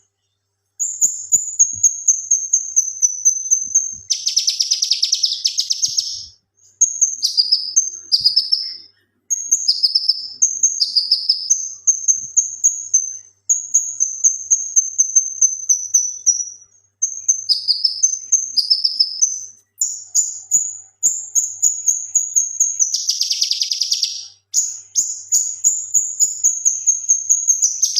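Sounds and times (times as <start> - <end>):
songbird singing rapid trills: 0.8 - 27.9.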